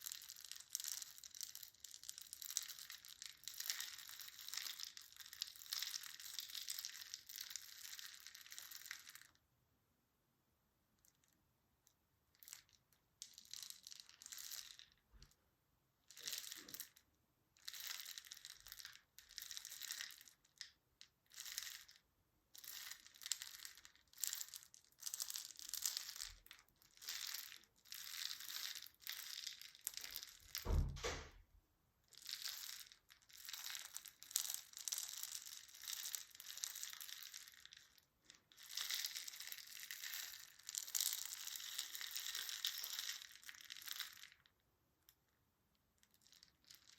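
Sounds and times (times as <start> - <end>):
low thump: 30.7 - 31.4
crinkling and crushing noises: 32.2 - 44.6.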